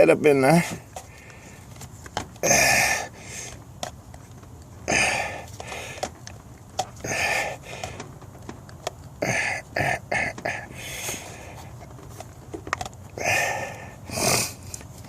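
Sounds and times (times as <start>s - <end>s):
person breathing hard: 0.7s - 1.7s, 2.4s - 3.6s, 4.9s - 6.1s, 7.0s - 8.1s, 9.2s - 11.8s, 13.2s - 14.8s.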